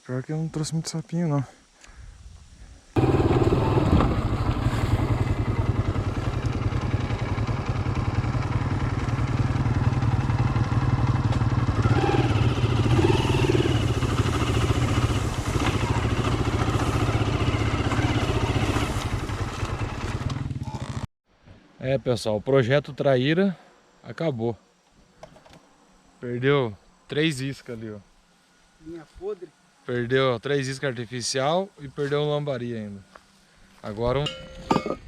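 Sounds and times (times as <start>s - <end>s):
motorcycle engine running: 3.0s - 21.1s.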